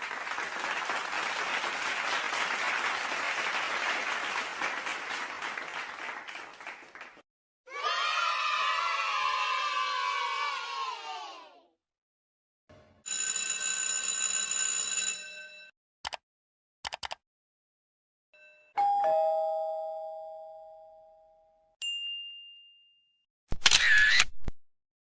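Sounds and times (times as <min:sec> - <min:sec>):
short clicks: 0:16.0 - 0:16.2, 0:16.8 - 0:17.2
two-note doorbell chime: 0:18.4 - 0:23.2.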